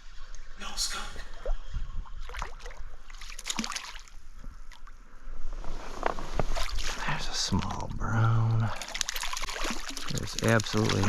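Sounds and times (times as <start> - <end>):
water splashing and slapping: 1.4 - 4.8, 6.2 - 11.0.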